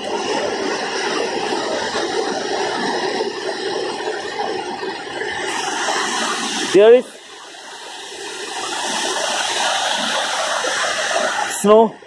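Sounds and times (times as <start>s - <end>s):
river rushing: 0.0s - 12.0s.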